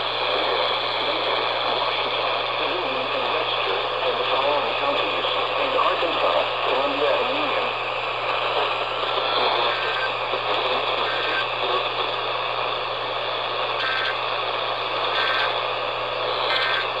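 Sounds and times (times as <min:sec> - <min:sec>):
radio static hiss: 0:00.0 - 0:17.0
short data-burst tones: 0:08.4 - 0:12.2, 0:13.7 - 0:14.4, 0:15.0 - 0:15.7, 0:16.3 - 0:17.0.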